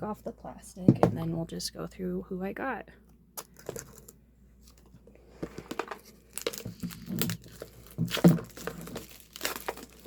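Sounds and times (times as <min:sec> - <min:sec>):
plastic wrapping crinkling and tearing: 0:05.7 - 0:10.0.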